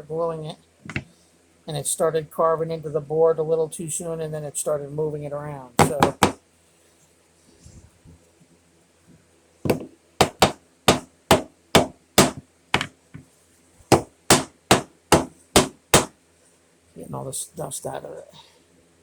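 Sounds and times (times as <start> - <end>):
wooden board knocking on wood: 0.9 - 1.1, 5.8 - 6.4, 9.7 - 13.0, 13.9 - 16.1.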